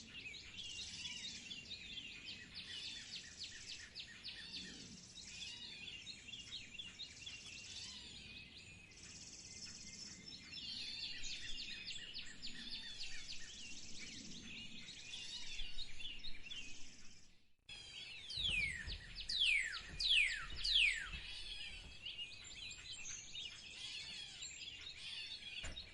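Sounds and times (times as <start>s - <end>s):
birds chirping and singing: 0.0s - 25.9s
downward whistled bird calls: 17.8s - 25.9s.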